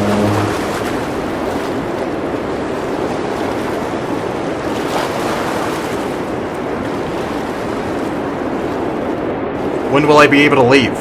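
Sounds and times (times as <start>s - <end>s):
wind rushing: 0.0s - 10.2s.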